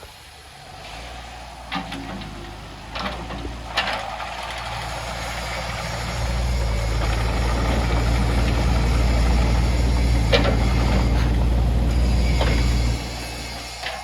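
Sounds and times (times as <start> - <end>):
diesel engine running: 0.6 - 13.9.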